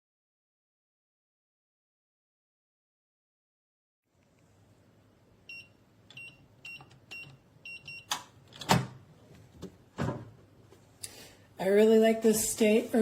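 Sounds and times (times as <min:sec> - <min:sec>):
keypad beeps: 0:05.5 - 0:08.2
metallic lock clunks: 0:07.9 - 0:09.0.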